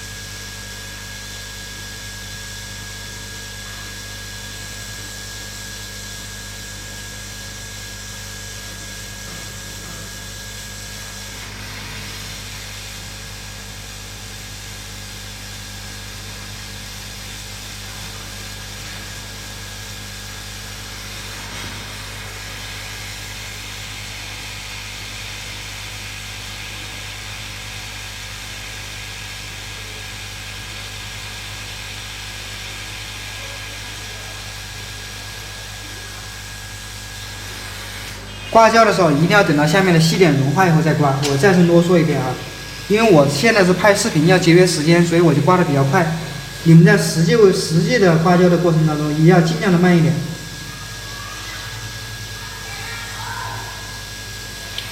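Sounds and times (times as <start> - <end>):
hot air station blowing: 0.0 - 52.4
thin whine: 35.8 - 52.3.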